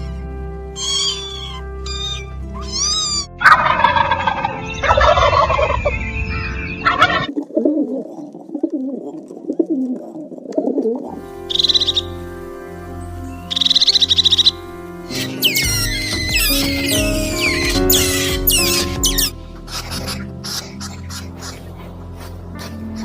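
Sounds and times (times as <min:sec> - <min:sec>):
light background music: 0:00.0 - 0:07.4, 0:11.0 - 0:23.0
high sweeping animal calls: 0:00.8 - 0:05.9, 0:11.4 - 0:12.2, 0:13.4 - 0:21.7
loud rattling animal call: 0:13.5 - 0:21.0.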